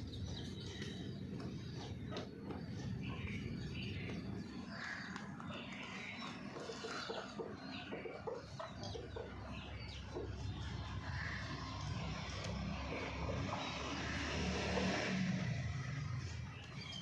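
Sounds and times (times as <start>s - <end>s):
hens clucking: 0.7s - 13.6s.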